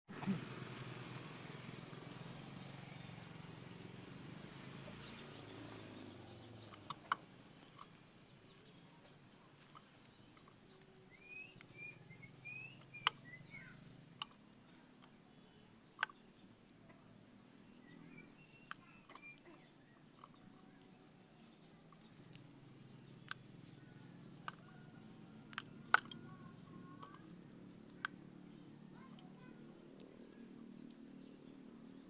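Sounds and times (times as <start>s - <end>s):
insects chirping in pulses: 0.4s - 3.9s, 5.0s - 32.0s
sharp clicks: 5.2s - 15.2s, 21.8s - 31.6s
bird whistling rising notes: 11.2s - 13.6s.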